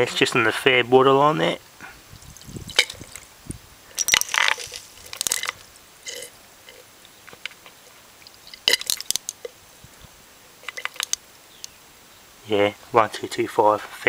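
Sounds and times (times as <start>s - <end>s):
liquid squishing: 2.1s - 3.3s, 4.0s - 6.3s, 8.3s - 9.5s, 10.6s - 11.2s.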